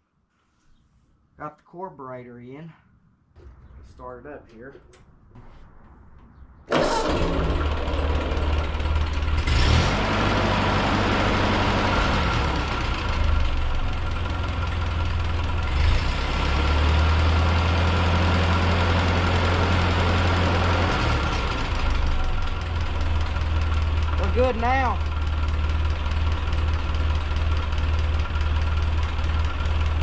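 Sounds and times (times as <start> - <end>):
tractor engine starting and running: 3.4 - 30.0.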